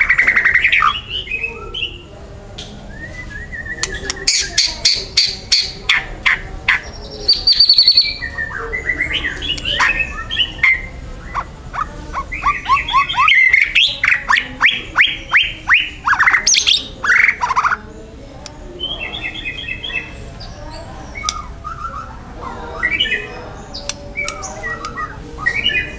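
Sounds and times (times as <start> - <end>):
bird chattering: 0.0 - 2.1, 3.6 - 25.9
bird whistled song: 2.9 - 5.8, 6.7 - 11.5, 12.2 - 17.8, 21.1 - 25.9.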